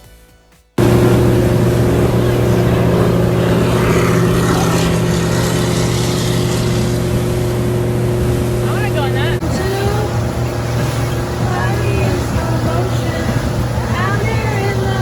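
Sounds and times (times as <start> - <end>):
outboard motor running: 0.8 - 15.0
water rushing past hull: 0.8 - 15.0
wind rushing: 0.8 - 15.0.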